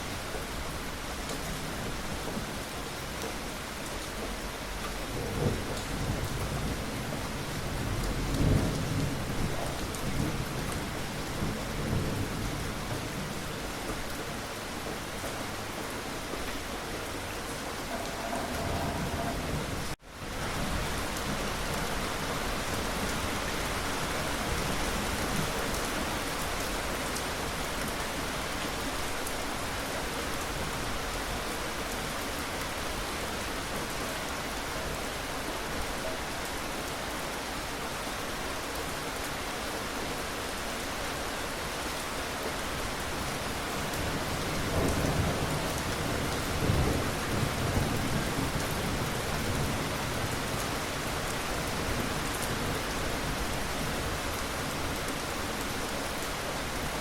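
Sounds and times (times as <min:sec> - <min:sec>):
steady rain: 0:00.0 - 0:57.0
thunder rumbling: 0:05.0 - 0:13.4, 0:17.2 - 0:21.1.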